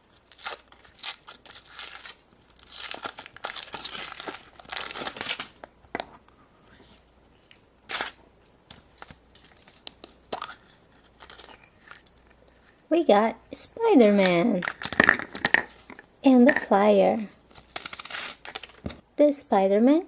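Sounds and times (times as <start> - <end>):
plastic wrapping crinkling and tearing: 0.0 - 5.8, 7.4 - 12.8, 14.0 - 16.0.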